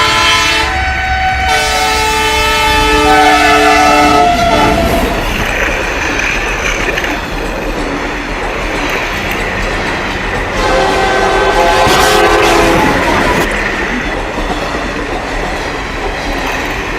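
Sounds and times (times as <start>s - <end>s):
train horn chord: 0.0s - 5.2s, 10.5s - 13.2s
train rumbling and clattering: 0.0s - 16.9s.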